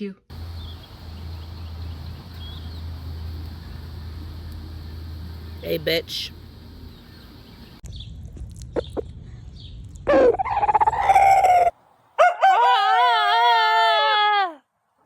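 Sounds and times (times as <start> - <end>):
rooster crowing: 11.1 - 14.6.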